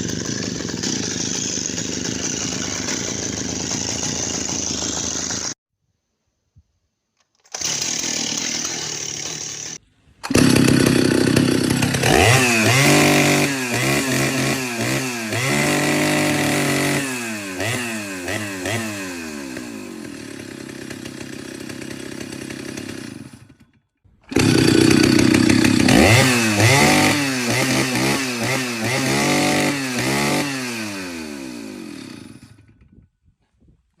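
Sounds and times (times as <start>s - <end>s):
chainsaw engine revving: 0.0s - 5.6s, 7.4s - 32.8s.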